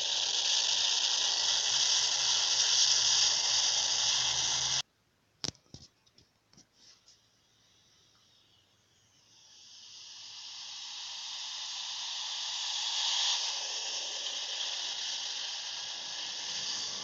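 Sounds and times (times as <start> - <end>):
jet engines hissing and whining: 0.0 - 4.8, 12.5 - 17.0.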